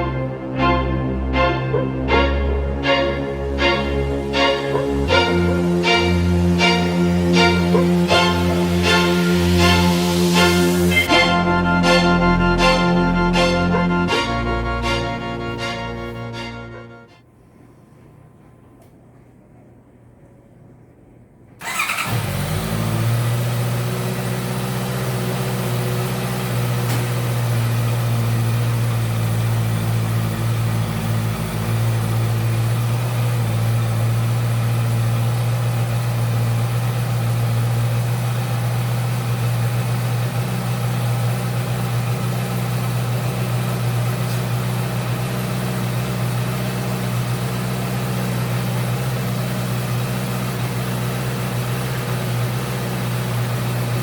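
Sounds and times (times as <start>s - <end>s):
motorcycle engine idling: 21.6s - 54.0s.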